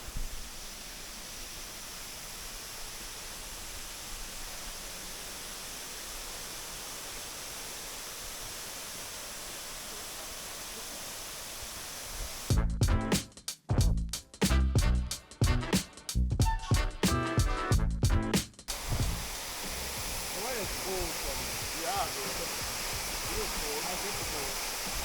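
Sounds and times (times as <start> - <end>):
loud music: 12.5 - 19.2
steady outdoor rushing noise: 18.7 - 25.0.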